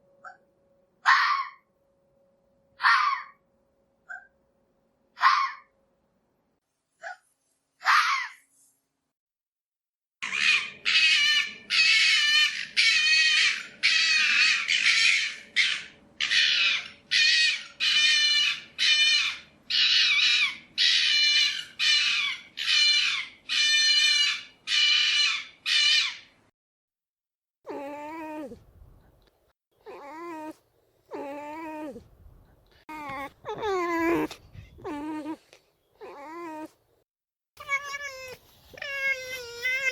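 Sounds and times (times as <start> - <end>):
fox barking: 1.0 - 1.6.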